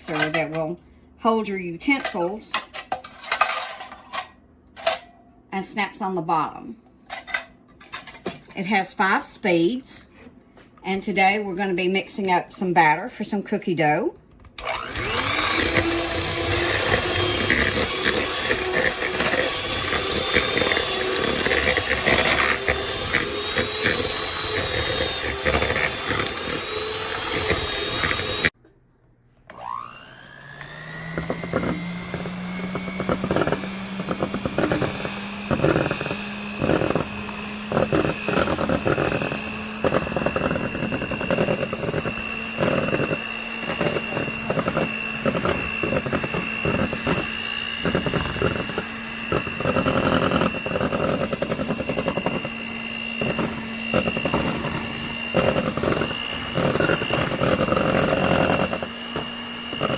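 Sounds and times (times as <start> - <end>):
electric hand mixer whining: 14.6 - 28.6, 29.5 - 59.9
mixer clicks and knocks: 29.5 - 59.9.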